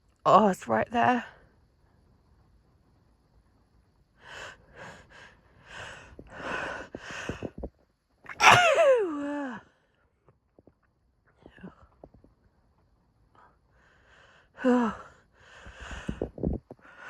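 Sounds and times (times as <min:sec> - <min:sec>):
woman sneezing: 0:08.3 - 0:09.0.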